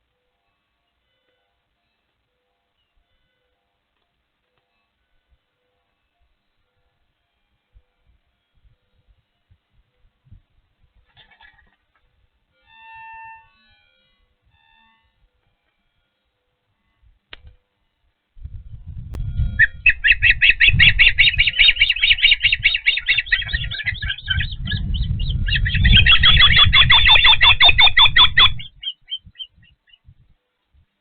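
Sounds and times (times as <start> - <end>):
low rumble: 18.4 - 29.4
bird chirping whistles: 19.2 - 30.1.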